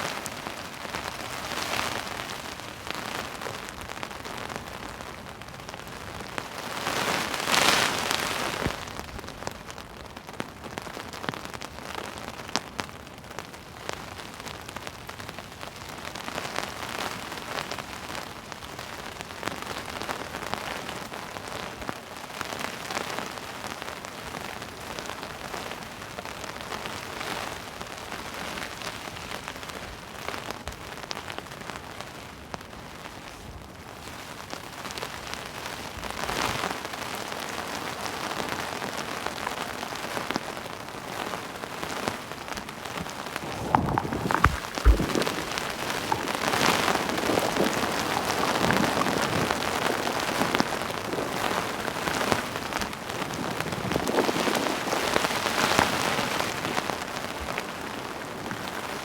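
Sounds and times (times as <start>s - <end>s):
heavy rain pouring: 37.7s - 59.0s.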